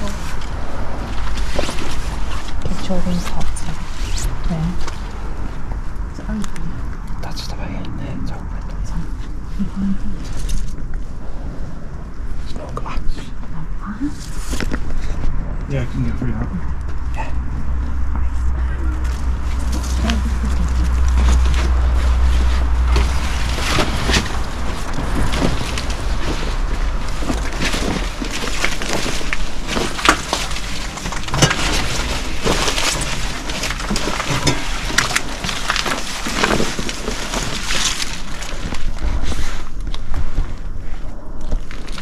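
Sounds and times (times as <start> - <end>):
wind rumble on microphone: 0.0 - 42.0
debris crunching underfoot: 16.7 - 42.0.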